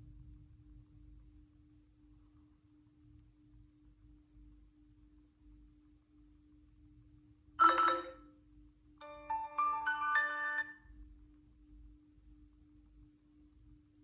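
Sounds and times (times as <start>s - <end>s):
bright phone chime: 7.6s - 8.3s, 9.0s - 10.8s.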